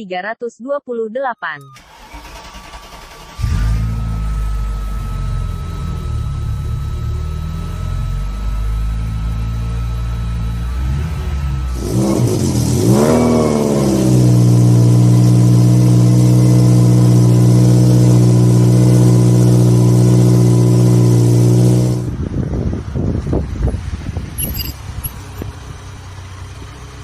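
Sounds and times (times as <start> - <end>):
car engine revving: 1.9 - 22.1.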